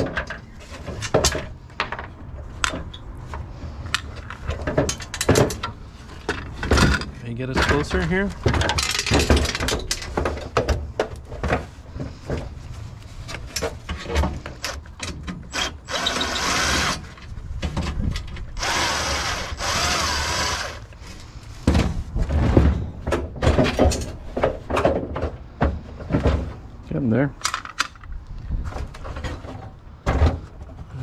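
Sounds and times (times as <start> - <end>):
tools clanking against metal: 4.2 - 10.9
cordless drill running: 15.5 - 17.0, 18.6 - 20.9.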